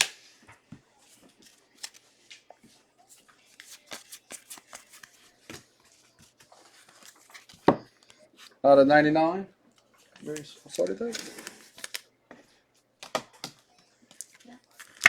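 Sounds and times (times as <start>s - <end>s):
trading cards clicking and rustling: 3.5s - 5.7s.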